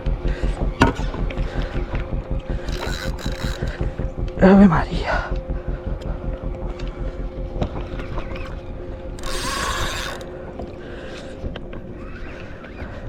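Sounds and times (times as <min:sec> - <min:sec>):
fishing reel gears clicking: 0:02.6 - 0:04.1, 0:09.2 - 0:10.3.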